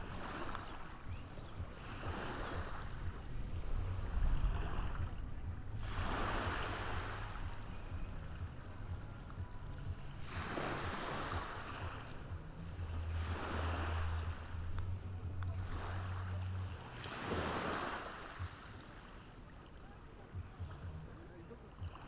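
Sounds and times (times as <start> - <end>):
low steady hum: 0.0 - 17.2
small waves breaking on beach: 0.0 - 20.7.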